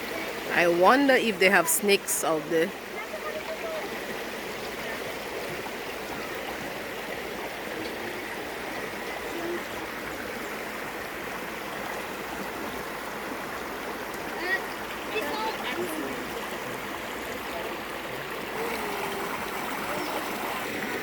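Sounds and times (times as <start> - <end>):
river water flowing over rocks: 0.0 - 21.0.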